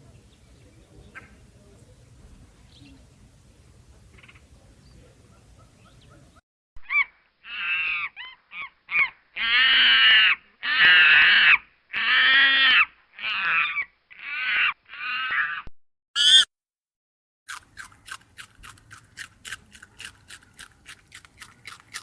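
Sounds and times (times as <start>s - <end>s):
animal calling loudly: 6.8s - 16.5s
small chirps: 16.2s - 16.5s.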